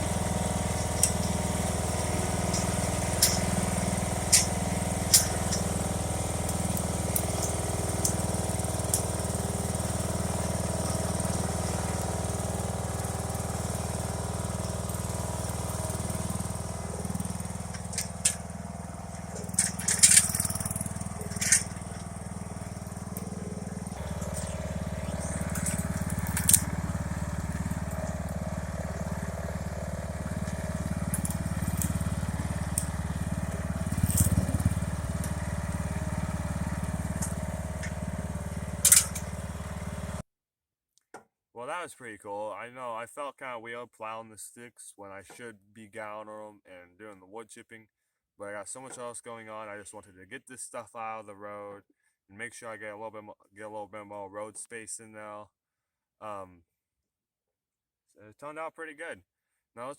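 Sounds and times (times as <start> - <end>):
lawn tractor engine running: 0.0 - 40.2.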